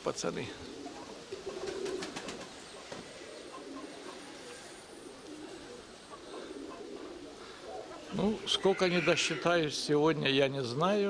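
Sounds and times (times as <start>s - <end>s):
pigeons cooing: 0.4s - 9.8s.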